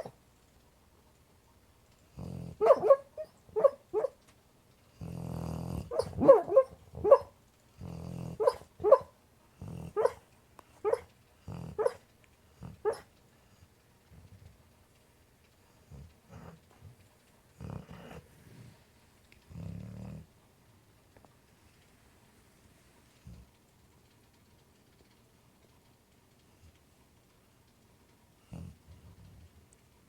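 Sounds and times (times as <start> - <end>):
dog snoring: 2.1 - 3.0, 4.9 - 7.2, 7.8 - 9.0, 9.6 - 10.2, 10.9 - 13.0, 17.6 - 18.8, 19.5 - 20.3, 28.4 - 29.3
dog barking and yipping in sleep: 2.2 - 4.2, 5.7 - 7.4, 8.2 - 10.2, 10.8 - 12.0, 12.7 - 13.1.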